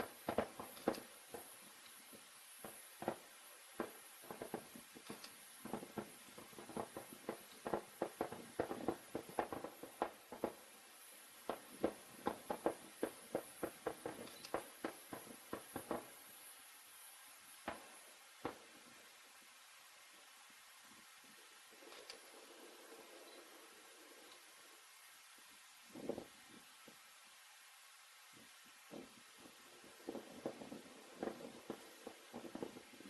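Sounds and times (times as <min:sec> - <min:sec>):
distant fireworks popping: 0:00.0 - 0:19.0, 0:28.4 - 0:33.0.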